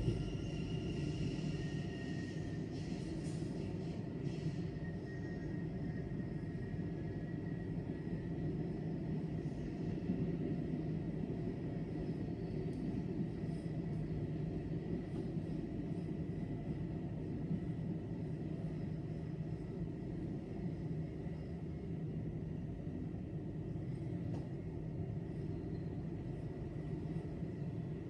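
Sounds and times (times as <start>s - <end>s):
low engine rumble: 0.0s - 4.7s.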